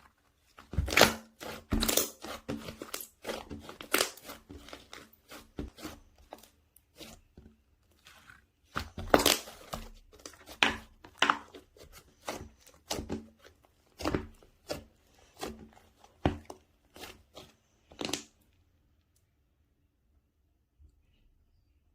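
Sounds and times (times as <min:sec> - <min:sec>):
slime squishing and popping: 0:00.6 - 0:07.2, 0:08.0 - 0:18.3.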